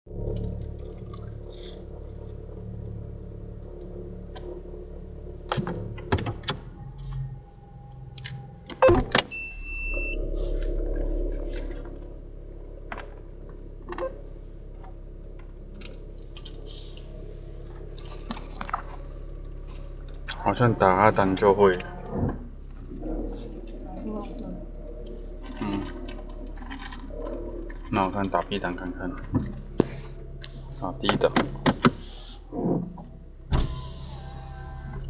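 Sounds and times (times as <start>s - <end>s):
loud engine drone: 0.1s - 32.4s
car engine idling: 0.1s - 35.0s
loud clunks: 4.4s - 12.2s
two-tone beep: 6.8s - 10.4s.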